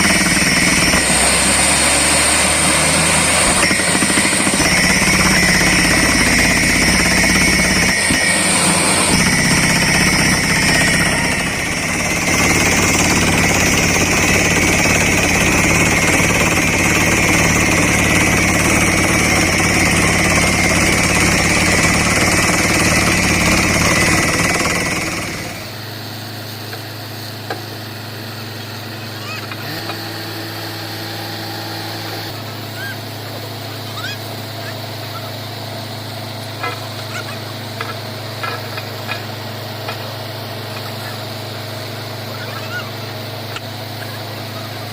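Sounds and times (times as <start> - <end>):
air hammer drilling: 0.0 - 44.9
drilling rig engine hum: 0.0 - 44.9.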